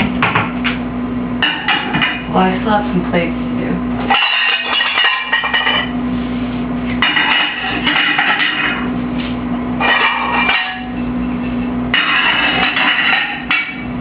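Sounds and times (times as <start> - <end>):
ceramic plates clinking: 4.1 - 5.9, 7.0 - 8.8, 9.8 - 11.0, 12.0 - 13.8.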